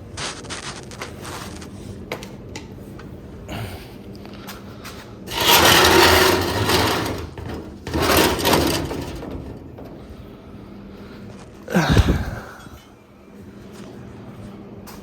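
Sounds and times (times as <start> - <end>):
ash scraping in fireplace: 5.3 - 10.2.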